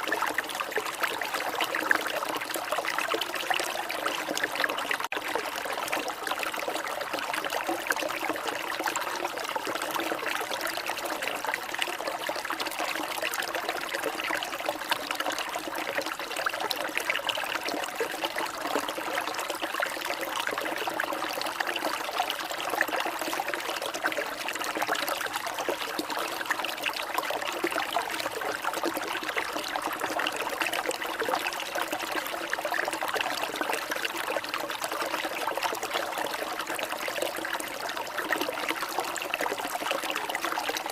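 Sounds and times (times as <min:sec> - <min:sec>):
water trickling and splashing: 0:00.0 - 0:40.9.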